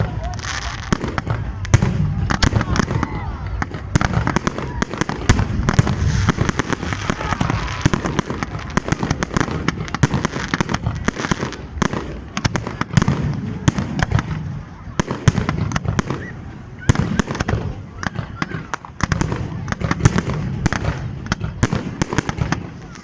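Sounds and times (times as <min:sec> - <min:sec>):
fireworks bangs and crackles: 0:00.0 - 0:23.0
low rumble: 0:01.4 - 0:10.0.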